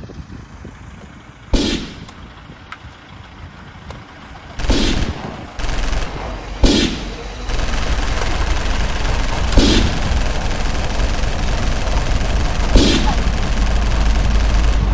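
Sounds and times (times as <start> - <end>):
rapid gunfire bursts: 1.6 - 2.2, 4.6 - 14.9.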